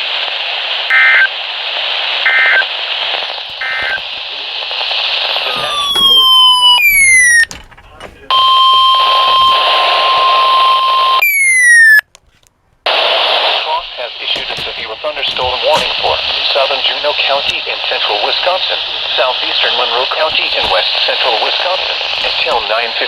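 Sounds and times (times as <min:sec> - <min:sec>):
radio receiver hiss: 0:00.0 - 0:23.0
short bursts of data tones: 0:05.4 - 0:07.5.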